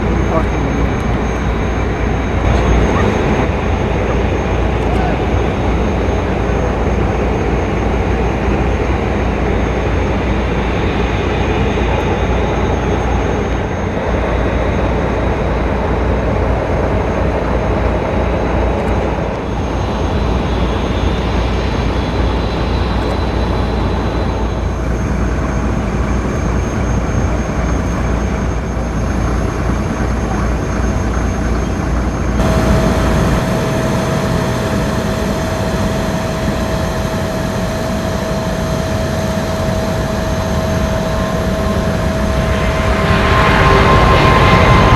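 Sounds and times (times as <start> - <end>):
jet engine rumble: 0.0 - 15.3, 16.4 - 44.9
steady mid-pitched tone: 32.4 - 44.0
faint high whine: 32.4 - 44.9.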